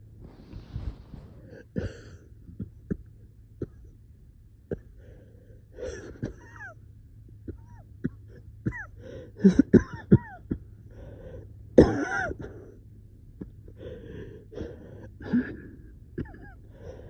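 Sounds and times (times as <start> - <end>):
wheezy laboured breaths: 0.2 - 4.0, 4.7 - 6.7, 7.4 - 17.0
person coughing: 1.5 - 3.9, 5.8 - 6.8, 7.4 - 10.7, 11.8 - 12.7, 15.2 - 16.6.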